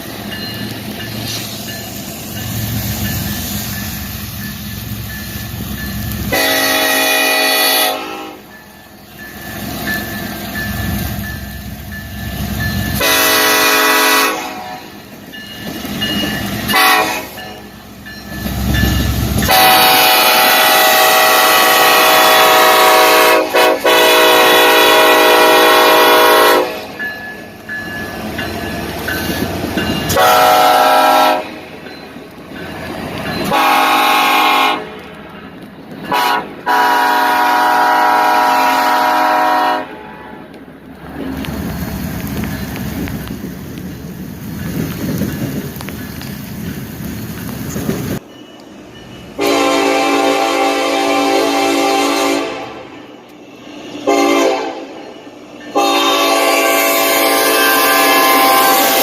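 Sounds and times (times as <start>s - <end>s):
locomotive horn blasts: 6.3s - 8.5s, 12.9s - 15.0s, 16.7s - 17.7s, 19.4s - 27.0s, 30.1s - 31.6s, 33.4s - 34.9s, 36.1s - 40.0s, 49.4s - 53.0s, 54.0s - 55.0s, 55.7s - 59.0s.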